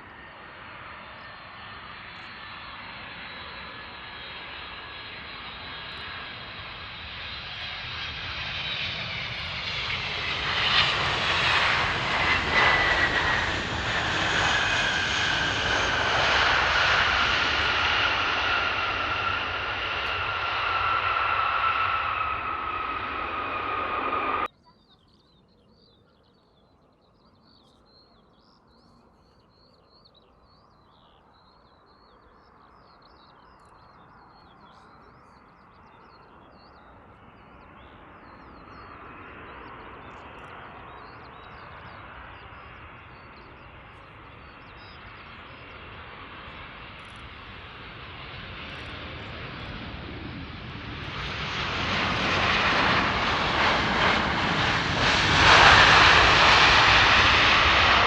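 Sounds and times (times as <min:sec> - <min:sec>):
jet airliner engine noise: 0:00.0 - 0:24.6, 0:27.4 - 0:58.0
birds chirping: 0:00.1 - 0:58.0.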